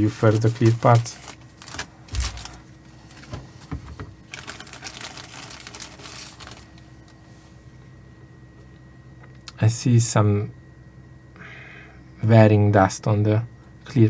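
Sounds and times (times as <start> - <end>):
plastic bag crinkling: 0.0 - 7.3
plastic parts clicking: 4.3 - 6.8.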